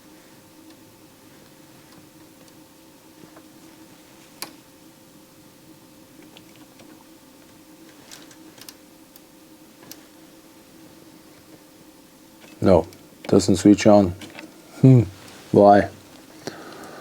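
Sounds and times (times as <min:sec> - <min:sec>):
faint electrical hum: 0:00.0 - 0:17.0
light clicks and taps of probes: 0:06.2 - 0:10.0.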